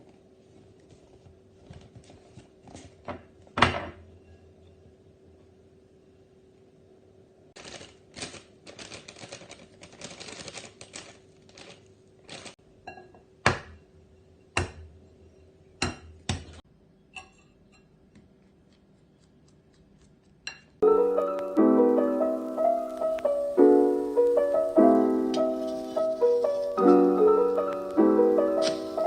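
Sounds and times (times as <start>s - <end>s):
soft piano music: 20.8s - 29.0s.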